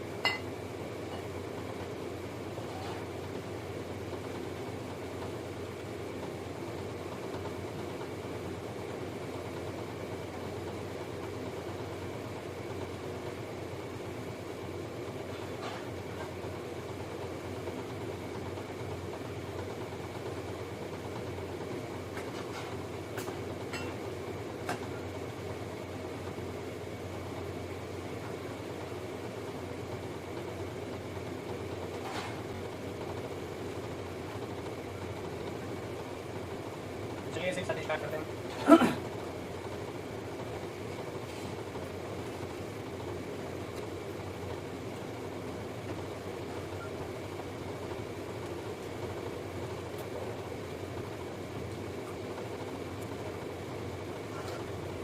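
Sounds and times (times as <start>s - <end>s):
steady mechanical hum: 0.0s - 55.0s
faint high whine: 44.0s - 49.4s.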